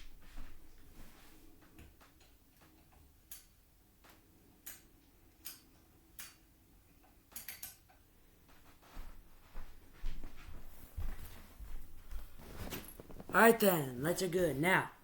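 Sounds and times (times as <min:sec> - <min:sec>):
small sharp clicks: 0:01.8 - 0:06.4, 0:07.0 - 0:08.0.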